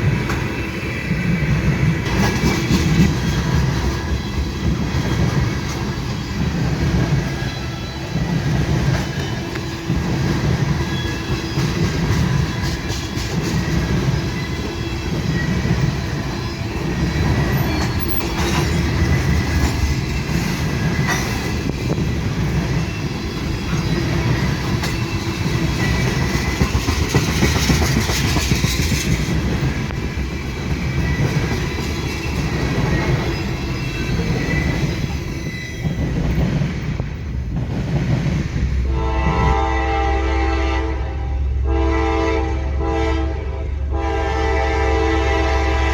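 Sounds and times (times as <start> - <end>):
wheels squealing on rail: 0.0 - 37.2
train wheels clicking over rail joints: 0.0 - 39.6
train horn: 38.8 - 45.9.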